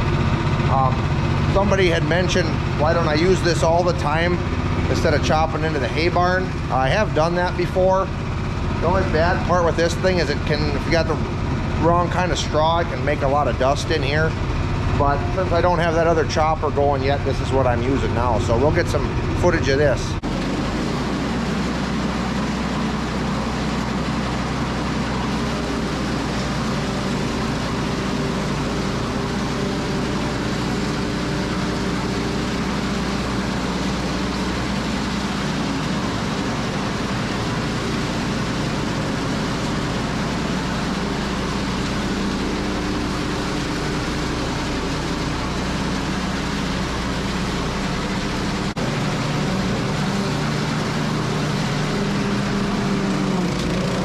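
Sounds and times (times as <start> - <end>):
bedding chopper shredding straw: 0.0 - 54.0.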